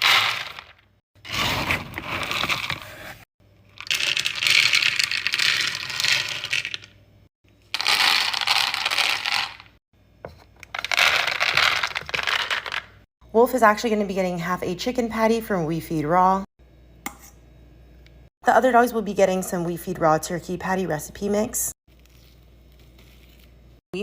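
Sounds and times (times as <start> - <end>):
dry kibble pouring into bowls: 3.8 - 6.9, 7.8 - 9.7.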